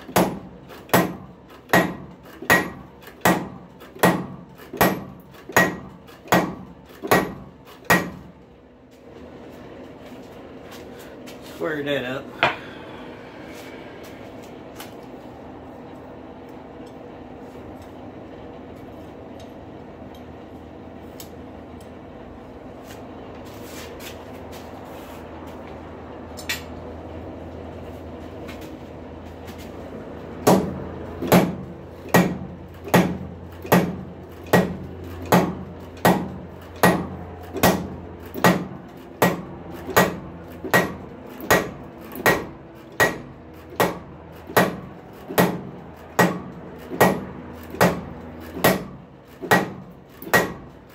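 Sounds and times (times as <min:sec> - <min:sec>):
steady hum: 0:00.0 - 0:50.9
hammer striking metal on anvil: 0:00.1 - 0:08.3, 0:12.4 - 0:12.7, 0:30.4 - 0:50.7.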